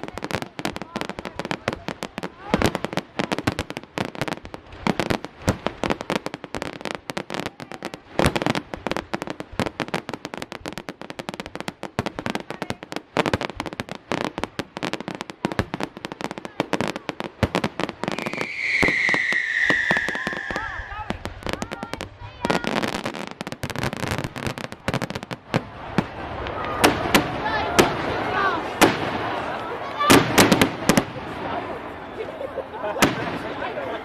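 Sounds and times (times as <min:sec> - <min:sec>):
fireworks crackling and banging: 0:00.0 - 0:34.0
falling firework whistle: 0:18.0 - 0:21.2.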